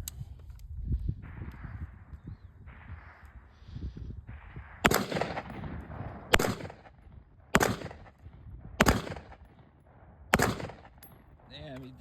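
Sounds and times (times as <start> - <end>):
gunshots: 2.6 - 12.0.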